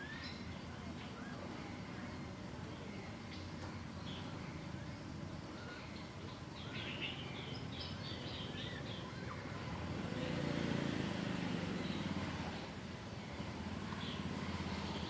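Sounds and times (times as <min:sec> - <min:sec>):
small bird chirping: 0:00.0 - 0:10.5.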